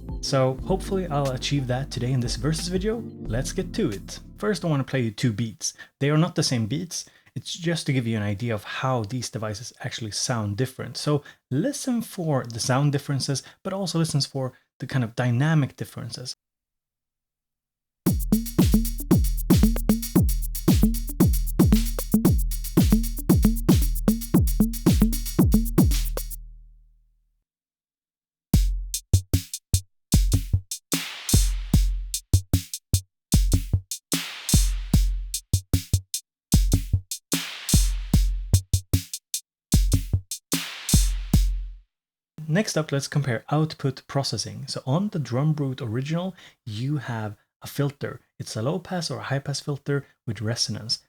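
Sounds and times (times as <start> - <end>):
drum machine kick pattern: 0.0 - 1.7, 18.1 - 26.4, 28.6 - 41.8
drum machine snare hits: 18.1 - 26.4, 28.6 - 41.7.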